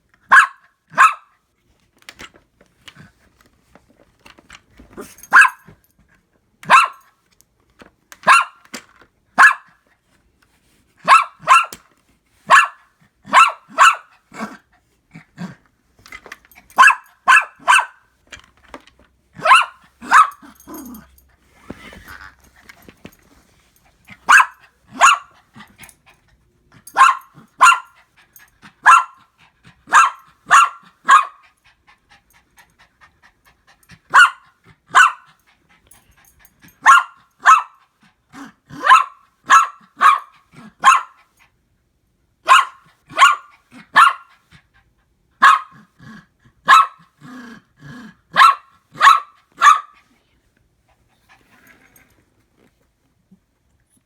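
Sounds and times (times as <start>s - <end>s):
dog barking: 0.3s - 1.3s, 5.3s - 5.7s, 6.6s - 7.1s, 8.2s - 8.6s, 9.4s - 9.8s, 11.0s - 11.8s, 12.5s - 14.5s, 16.8s - 18.0s, 19.4s - 21.0s, 24.2s - 25.3s, 26.9s - 28.0s, 28.8s - 29.2s, 29.9s - 31.4s, 34.1s - 35.3s, 36.8s - 37.8s, 38.7s - 41.2s, 42.4s - 44.3s, 45.4s - 45.9s, 46.6s - 47.1s, 48.3s - 50.0s.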